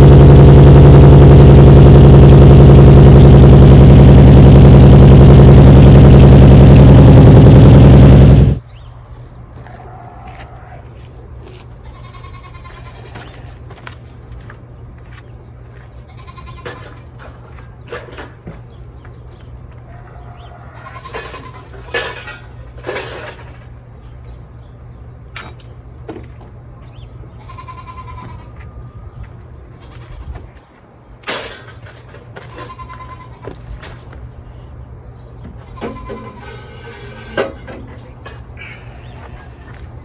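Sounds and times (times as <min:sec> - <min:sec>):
steady low hum: 0:00.0 - 0:09.7.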